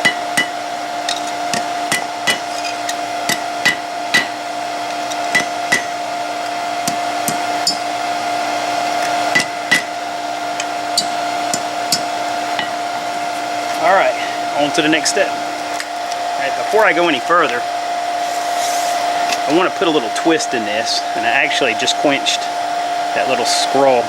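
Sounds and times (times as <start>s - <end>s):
hammer striking steel on anvil: 0.0s - 4.4s, 5.3s - 6.0s, 6.8s - 7.9s, 9.3s - 9.9s, 11.0s - 12.8s
steady hum: 0.0s - 24.0s.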